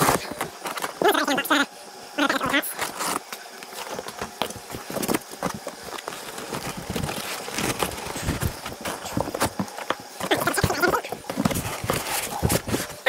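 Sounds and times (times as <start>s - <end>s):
packaging knocks and clatters: 2.7s - 13.0s.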